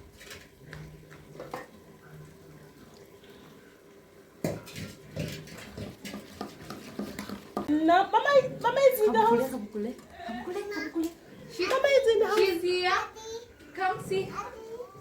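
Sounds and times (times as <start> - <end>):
irregular knocks and clatters: 4.4 - 7.7.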